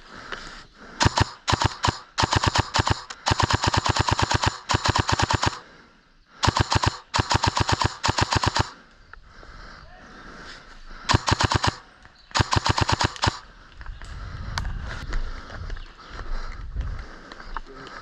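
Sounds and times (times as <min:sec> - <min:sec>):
airsoft gun firing full-auto: 0:01.0 - 0:05.6, 0:06.4 - 0:08.8, 0:11.1 - 0:13.4.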